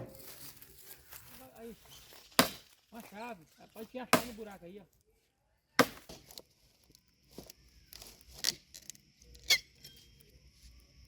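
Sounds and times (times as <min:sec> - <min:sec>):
chopping strikes on wood: 0:02.4 - 0:02.8, 0:04.1 - 0:04.4, 0:05.8 - 0:06.4.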